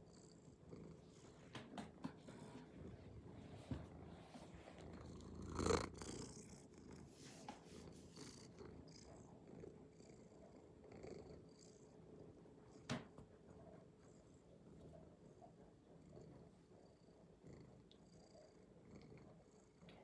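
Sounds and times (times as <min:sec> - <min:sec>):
cat purring: 0:00.0 - 0:20.0.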